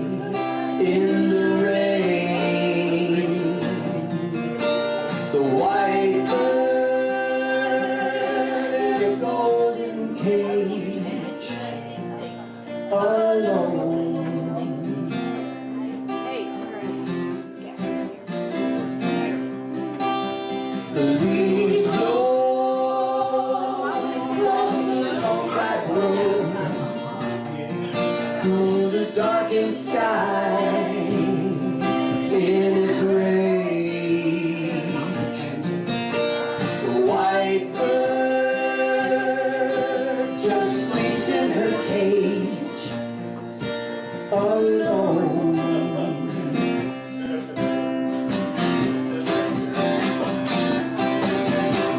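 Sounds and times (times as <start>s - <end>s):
strummed acoustic guitar: 0.0s - 51.9s
person singing long notes: 5.3s - 11.5s.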